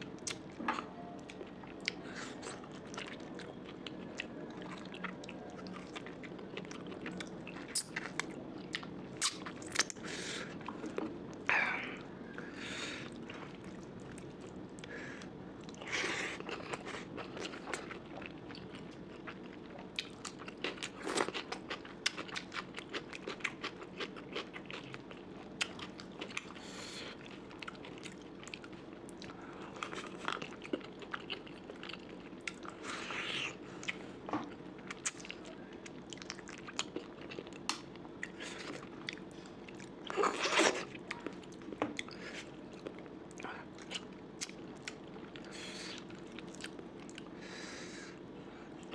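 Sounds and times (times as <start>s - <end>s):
person chewing: 13.0s - 47.4s.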